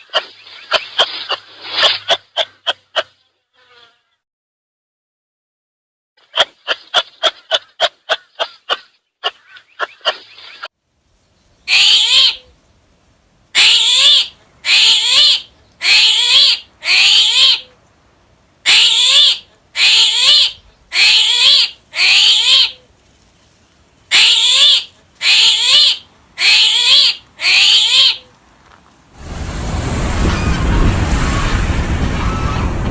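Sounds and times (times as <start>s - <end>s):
animal calling: 11.7s - 12.5s, 13.6s - 17.8s, 18.7s - 22.9s, 24.1s - 28.3s, 29.2s - 32.9s.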